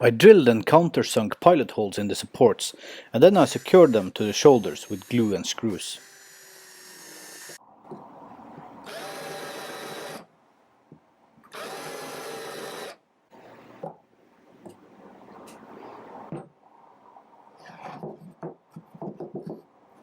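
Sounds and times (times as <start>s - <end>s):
power drill drilling into wood: 3.4s - 7.6s, 8.8s - 10.2s, 11.5s - 13.0s.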